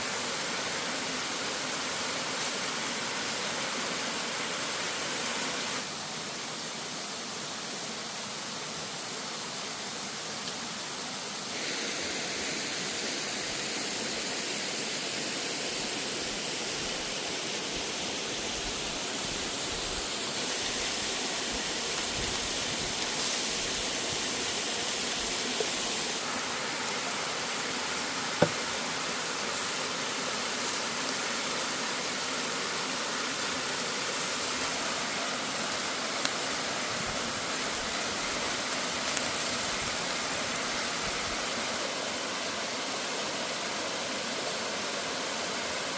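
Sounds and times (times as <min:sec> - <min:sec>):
sharp knock: 0:28.4 - 0:28.6.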